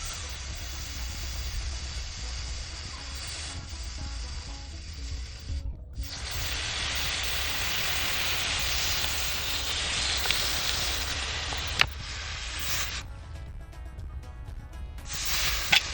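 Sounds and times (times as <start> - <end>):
hot metal sizzling on ice: 0.0 - 13.0, 15.1 - 15.9
sharp click: 6.5 - 13.0, 15.1 - 15.9.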